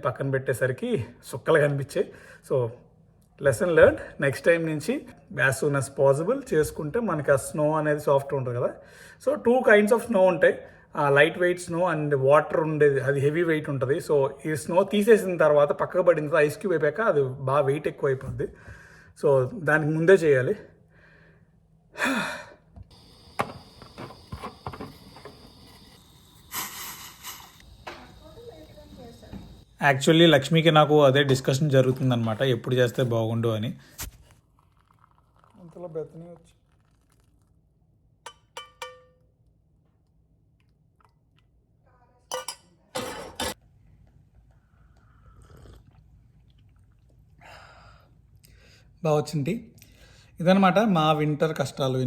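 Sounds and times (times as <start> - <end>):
person sighing: 22.0 - 22.6
faint high whine: 22.9 - 30.9
glassware clinking: 38.3 - 39.3, 42.3 - 43.6.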